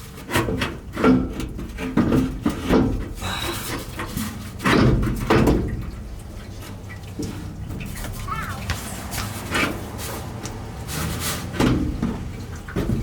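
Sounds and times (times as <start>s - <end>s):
metal clunks and scrapes: 0.1s - 6.0s.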